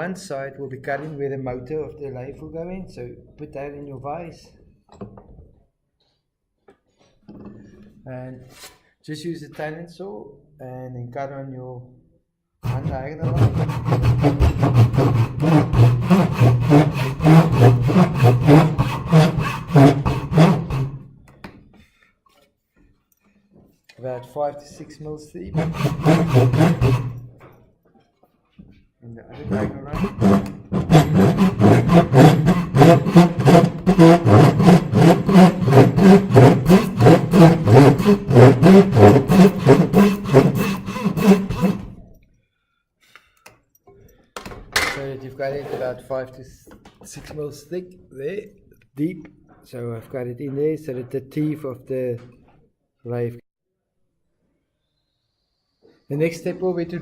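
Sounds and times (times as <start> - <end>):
hand saw cutting wood: 12.6 - 21.2, 25.4 - 27.5, 29.4 - 42.1, 45.4 - 46.0.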